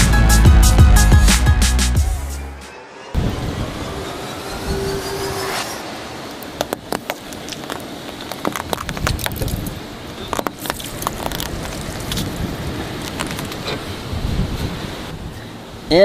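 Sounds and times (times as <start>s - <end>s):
tyres crushing brittle objects: 6.9s - 13.6s.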